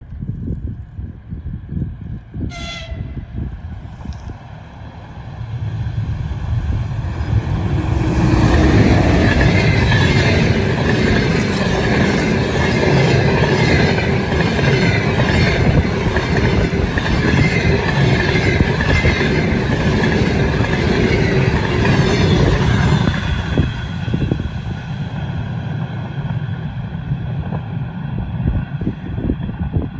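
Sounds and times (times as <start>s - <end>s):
passenger train passing: 1.6s - 29.9s.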